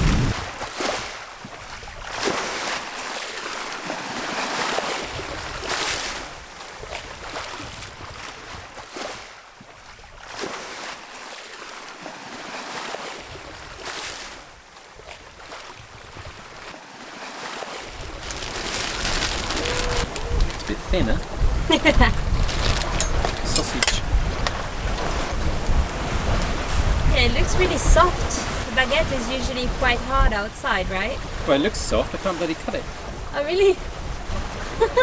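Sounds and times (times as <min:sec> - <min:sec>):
wind buffeting microphone: 0:00.0 - 0:01.0, 0:17.9 - 0:35.0
water splashing along boat hull: 0:00.0 - 0:35.0.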